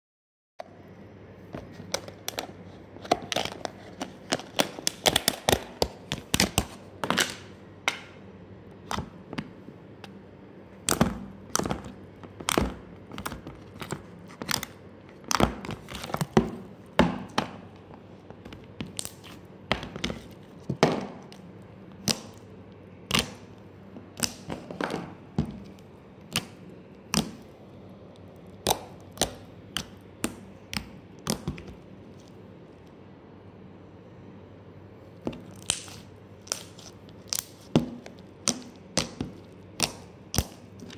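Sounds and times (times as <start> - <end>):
slime popping and clicking: 35.4 - 40.6.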